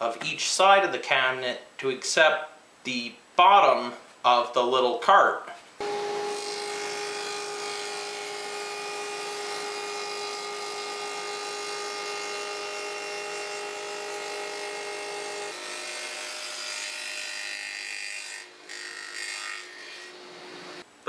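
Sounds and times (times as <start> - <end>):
table saw cutting plywood: 5.8 - 20.8.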